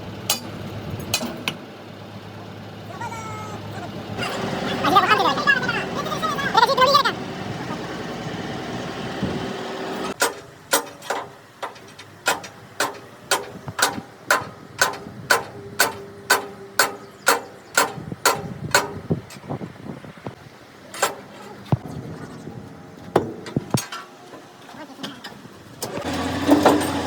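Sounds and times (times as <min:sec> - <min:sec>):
steady mechanical noise: 0:00.0 - 0:27.0
hammer striking steel: 0:00.3 - 0:01.6, 0:10.2 - 0:19.0.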